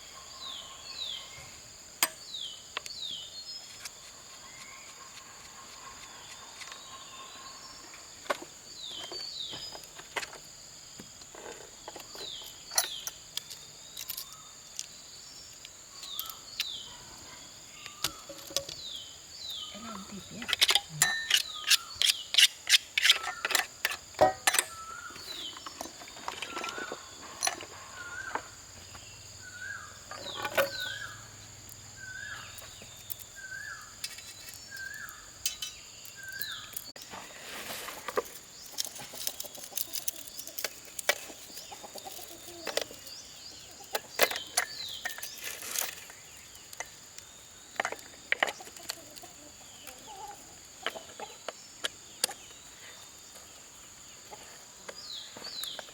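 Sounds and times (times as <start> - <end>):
high insect drone: 0.0 - 55.9.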